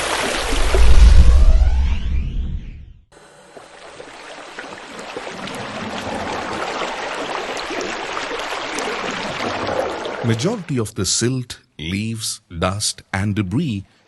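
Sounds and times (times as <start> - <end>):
water trickling and splashing: 0.0 - 1.0, 3.2 - 10.7.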